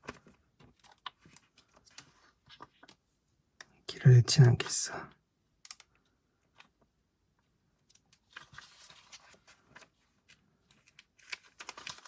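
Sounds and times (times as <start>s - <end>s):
packaging rustling with light clicks: 0.0s - 3.0s, 7.8s - 12.0s.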